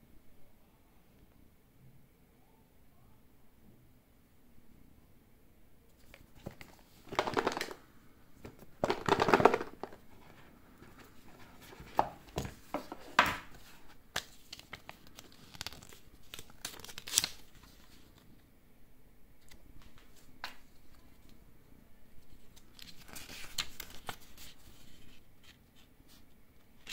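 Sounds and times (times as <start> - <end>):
packaging clicks and rustles: 6.0 - 7.8, 8.4 - 18.2
packaging crinkling and tearing: 6.4 - 7.8, 8.8 - 10.0, 13.6 - 18.2, 22.6 - 24.6.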